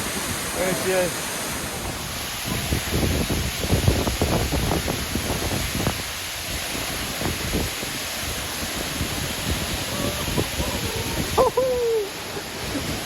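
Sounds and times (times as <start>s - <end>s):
waterfall rushing: 0.0s - 13.0s
person calling out: 9.8s - 12.2s.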